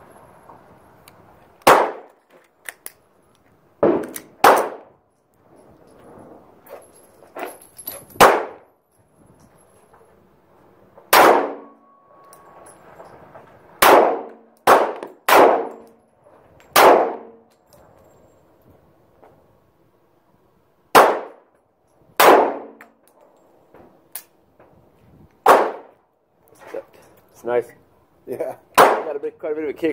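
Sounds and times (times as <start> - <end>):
pistol shots with metallic ring: 4.0 - 4.9, 8.2 - 8.7, 11.1 - 12.6, 13.8 - 16.0, 16.7 - 17.5, 20.9 - 21.4, 22.2 - 23.0, 25.5 - 25.9, 28.8 - 29.1.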